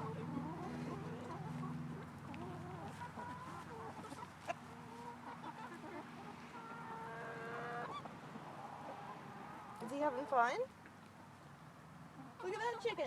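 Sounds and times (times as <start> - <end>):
chickens clucking: 0.0 - 13.0.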